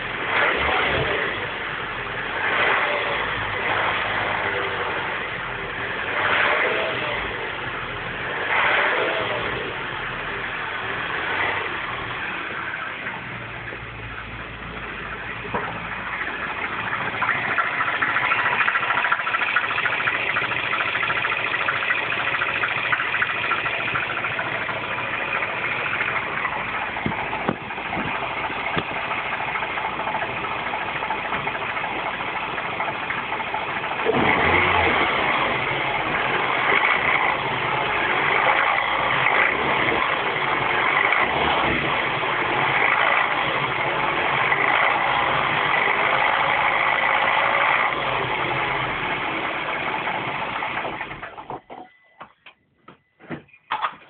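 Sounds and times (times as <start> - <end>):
car engine running: 0.0 - 51.6
fast ticking rattle: 15.7 - 34.0.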